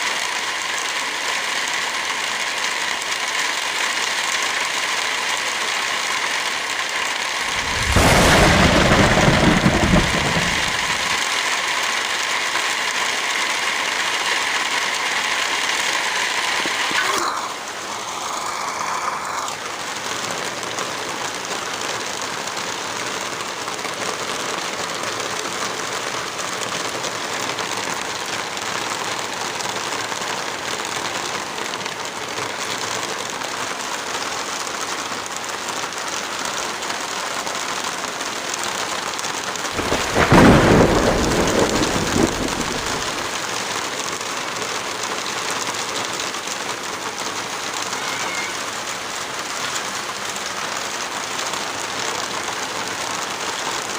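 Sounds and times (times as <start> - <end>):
steady rain falling: 0.0 - 53.9
thunder clap rumbling: 7.5 - 11.2, 39.8 - 43.4.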